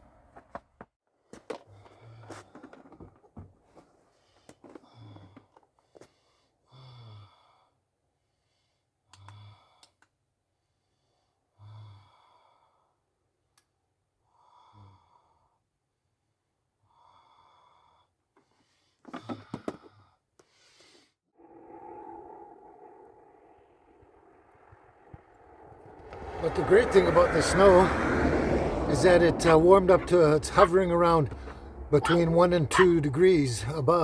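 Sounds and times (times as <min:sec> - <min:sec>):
person breathing heavily: 0:31.3 - 0:32.5.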